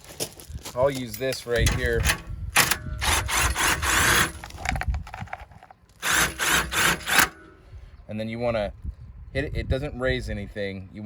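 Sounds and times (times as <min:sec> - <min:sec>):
cordless drill running: 0:03.0 - 0:04.5, 0:06.0 - 0:07.4.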